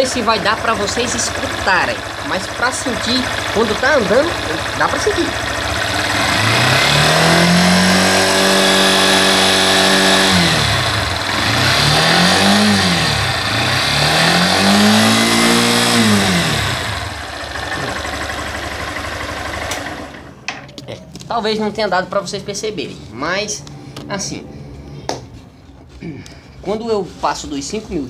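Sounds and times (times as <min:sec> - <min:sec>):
motorcycle engine revving: 0:00.0 - 0:20.5.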